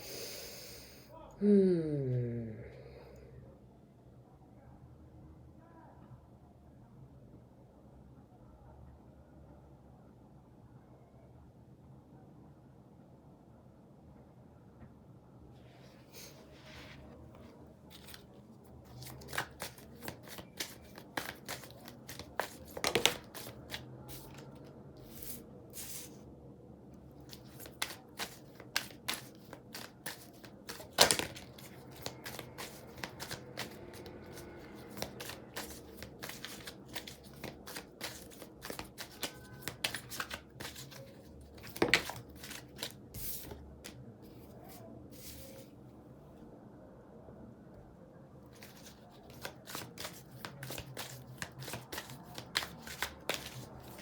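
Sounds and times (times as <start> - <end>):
cards being shuffled: 17.9 - 26.2, 27.2 - 45.6, 48.5 - 54.0.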